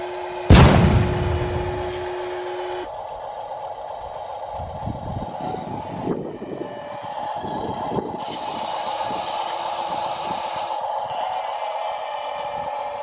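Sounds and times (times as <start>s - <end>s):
small electric motors whirring: 5.5s - 13.0s.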